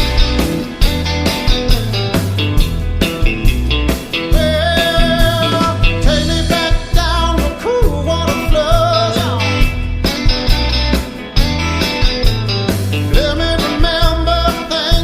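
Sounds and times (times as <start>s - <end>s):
drum beat: 0.0s - 9.0s
bass guitar: 0.0s - 15.0s
electric guitar: 0.0s - 15.0s
person singing: 4.3s - 9.7s, 13.1s - 15.0s.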